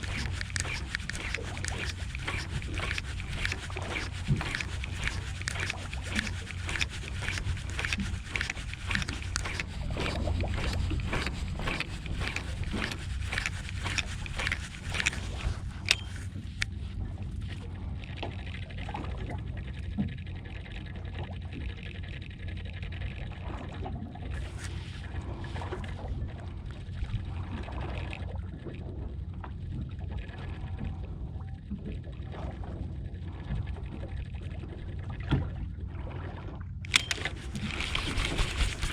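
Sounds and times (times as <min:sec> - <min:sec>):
fast clicks and knocks: 0:00.0 - 0:16.7, 0:36.9 - 0:38.9
boat engine low rumble: 0:00.0 - 0:38.9
water moving around hull: 0:00.0 - 0:38.9.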